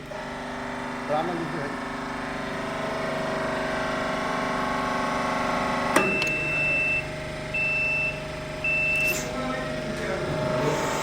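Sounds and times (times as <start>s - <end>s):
machine humming: 1.7s - 11.0s
high electronic beep: 6.0s - 9.3s.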